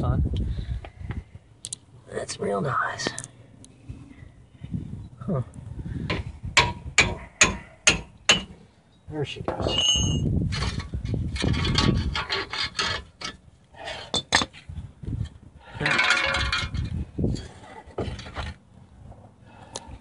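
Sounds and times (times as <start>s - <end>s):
metal parts scraping: 9.6s - 13.4s, 15.8s - 18.6s.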